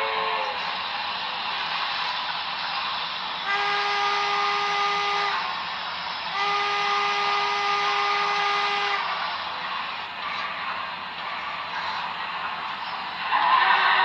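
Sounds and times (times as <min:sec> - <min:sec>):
steam whistle blasts: 0:00.0 - 0:00.7, 0:03.4 - 0:09.2, 0:13.3 - 0:14.0
continuous steam hiss: 0:00.0 - 0:14.0.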